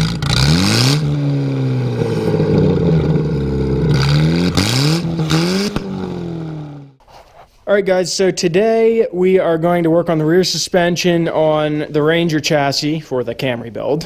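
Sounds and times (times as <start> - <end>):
car engine revving: 0.0 - 7.0.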